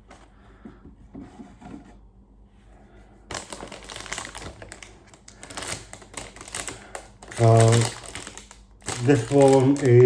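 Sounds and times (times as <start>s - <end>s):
plastic bags crackling: 3.3s - 10.0s.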